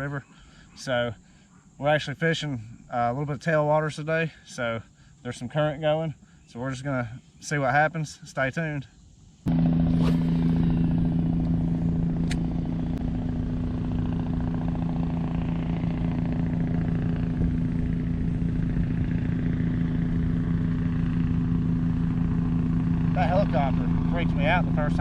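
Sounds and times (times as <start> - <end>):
helicopter rotor chop: 9.5 - 25.0
low hum: 9.5 - 25.0.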